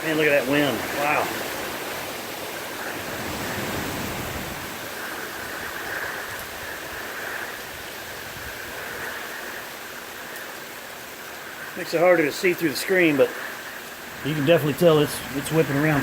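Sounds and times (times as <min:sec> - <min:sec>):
hurricane winds rushing: 0:00.0 - 0:16.0
rain: 0:00.0 - 0:16.0
wind gusts on microphone: 0:00.0 - 0:16.0.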